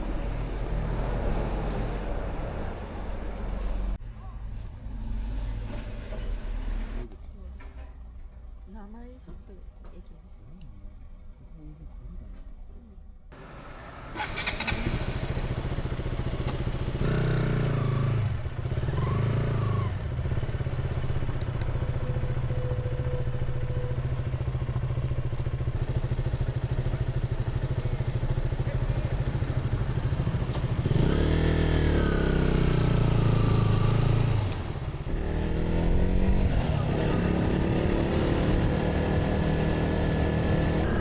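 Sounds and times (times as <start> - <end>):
motorcycle engine running: 14.2 - 41.0.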